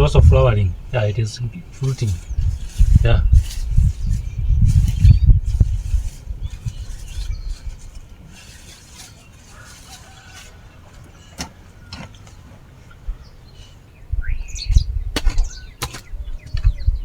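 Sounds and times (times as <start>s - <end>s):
low rumble: 0.0s - 7.8s
faint bird chirps: 0.7s - 17.0s.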